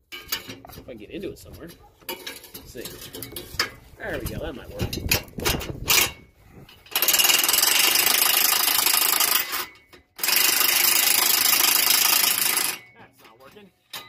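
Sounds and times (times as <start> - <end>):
power tool running: 6.9 - 12.8.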